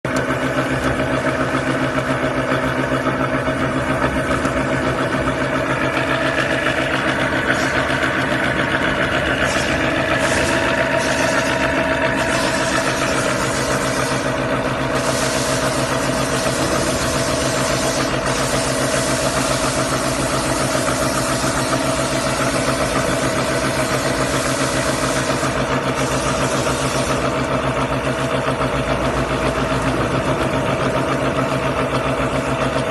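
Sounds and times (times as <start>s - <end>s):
milling machine running: 0.1s - 32.9s
cutting hiss: 5.7s - 27.3s.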